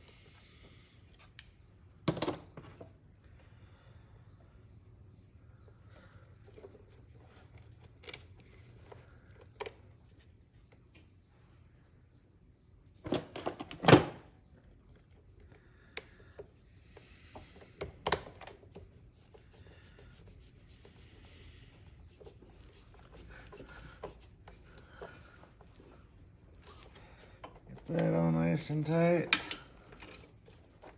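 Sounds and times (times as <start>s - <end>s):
small metal clicks and knocks: 28.8s - 30.9s.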